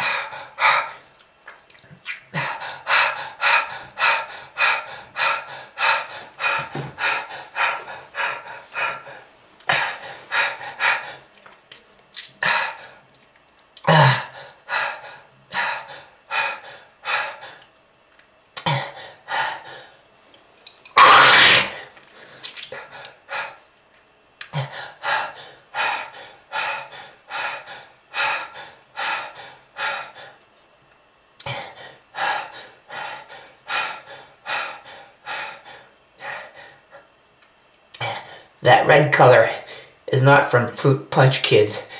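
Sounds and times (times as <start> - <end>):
person coughing: 13.8 - 14.3, 21.0 - 21.8.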